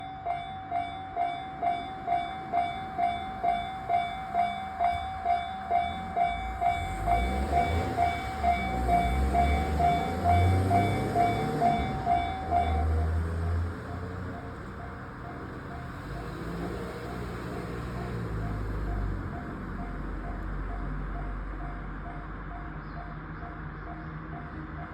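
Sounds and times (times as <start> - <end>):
level crossing bell ringing: 0.0 - 16.2
train rumble and wheel noise: 0.0 - 24.9.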